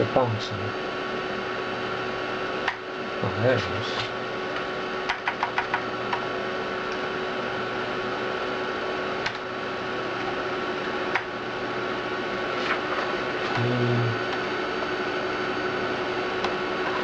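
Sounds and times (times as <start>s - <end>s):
hard drive and fan whirring: 0.0s - 17.0s
hard drive clicks: 4.0s - 6.3s, 11.1s - 11.3s.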